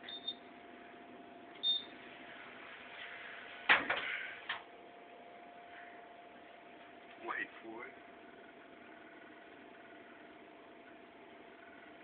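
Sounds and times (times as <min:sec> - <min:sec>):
keypad beep: 0:00.0 - 0:00.4, 0:01.6 - 0:01.9
faint steady hum: 0:00.0 - 0:12.0.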